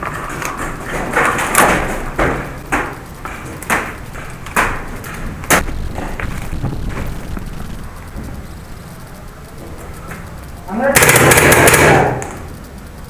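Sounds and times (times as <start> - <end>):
paintball shots: 11.0 - 12.4.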